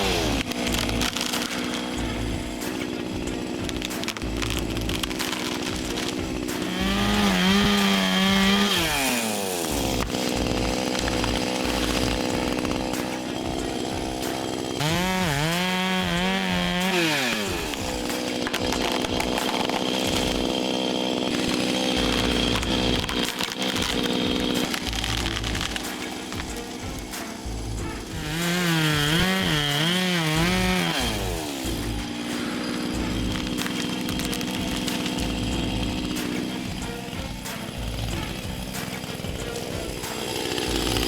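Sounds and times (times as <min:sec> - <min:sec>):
chainsaw engine revving: 0:00.0 - 0:41.0.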